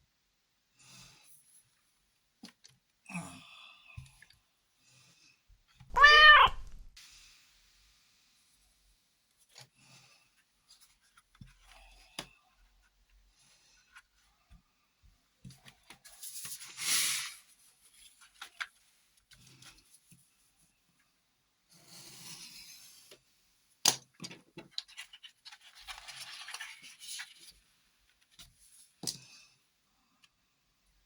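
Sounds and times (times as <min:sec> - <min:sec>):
cat meowing: 0:05.9 - 0:06.8
rustle or scrape: 0:16.0 - 0:20.1, 0:24.8 - 0:29.0
pencils and packaging clicking: 0:23.9 - 0:27.6.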